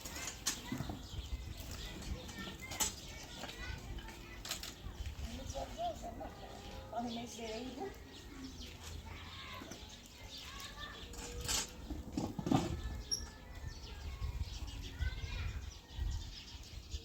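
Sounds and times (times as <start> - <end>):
faint bird chirps: 12.6 - 17.0.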